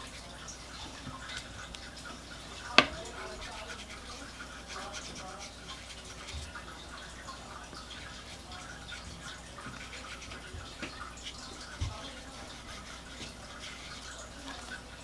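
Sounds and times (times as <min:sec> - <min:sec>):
paintbrush brushing on paper: 0:00.0 - 0:15.0
soft thump: 0:02.8 - 0:03.1.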